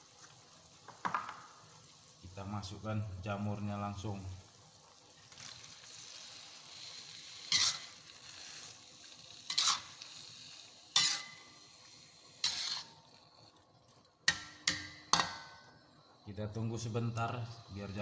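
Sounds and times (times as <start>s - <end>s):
mushrooms sizzling in a pan: 0.0s - 13.5s, 14.1s - 15.6s, 16.2s - 18.0s
tap against pan: 0.9s - 1.5s, 14.3s - 15.6s
spatula scraping: 5.4s - 13.6s.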